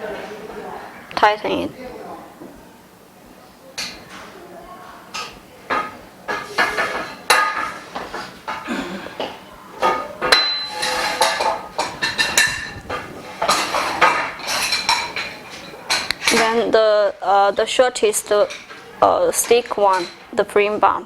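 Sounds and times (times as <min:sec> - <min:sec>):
metal bars clanking and clinking: 0:09.8 - 0:16.6.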